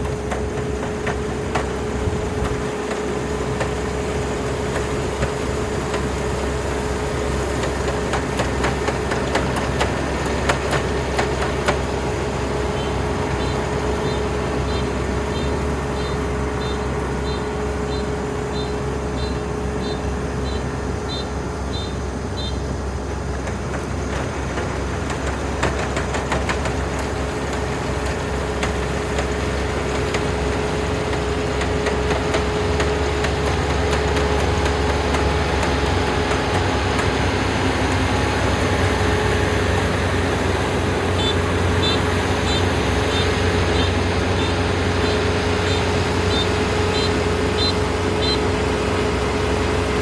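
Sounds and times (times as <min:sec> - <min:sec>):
combine harvester humming: 0:00.0 - 0:50.0
high beeps: 0:41.2 - 0:48.4.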